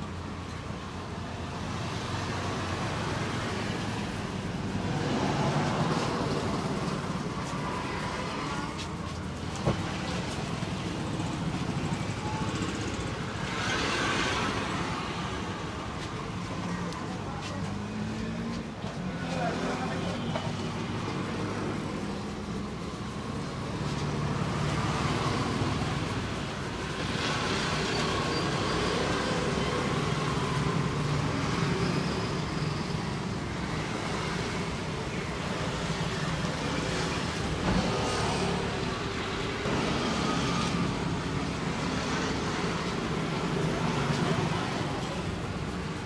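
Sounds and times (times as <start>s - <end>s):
road traffic passing: 0.0s - 46.0s.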